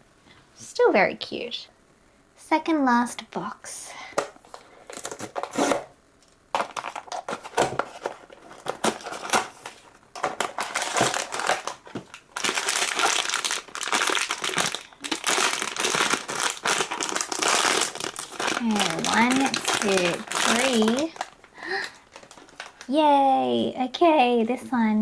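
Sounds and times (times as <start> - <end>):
wrapping crinkling and rustling: 4.2 - 23.3.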